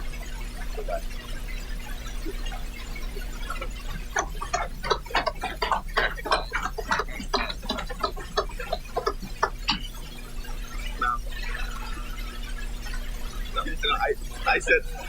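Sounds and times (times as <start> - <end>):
mains hum: 0.0 - 15.0
people clapping and knocking: 3.6 - 9.9.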